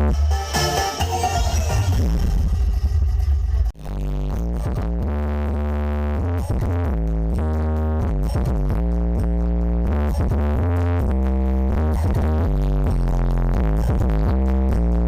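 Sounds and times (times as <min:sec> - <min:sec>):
synthesizer melody: 0:00.0 - 0:03.7
electronic dance music: 0:00.0 - 0:04.9
heavy deep bass line: 0:00.0 - 0:15.0.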